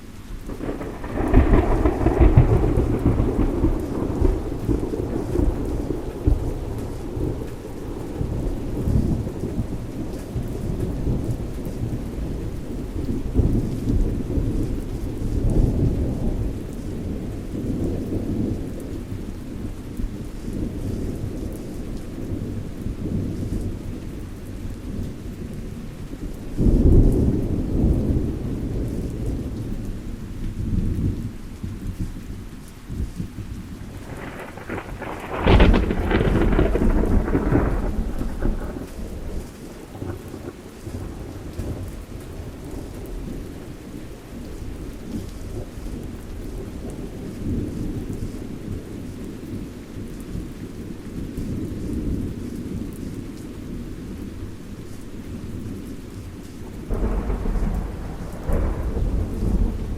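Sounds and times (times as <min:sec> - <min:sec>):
steady rain: 0:00.0 - 0:59.9
loud thunder clap: 0:00.5 - 0:07.8, 0:33.9 - 0:39.4, 0:56.9 - 0:59.9
thunder rumbling: 0:00.5 - 0:31.9, 0:32.9 - 0:59.9.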